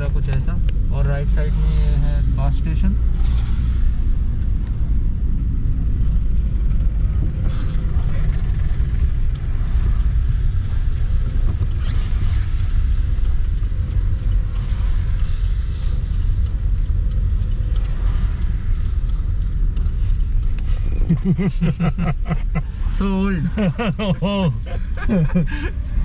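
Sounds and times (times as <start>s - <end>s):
car road and engine rumble: 0.0s - 26.0s
person speaking: 22.9s - 25.7s.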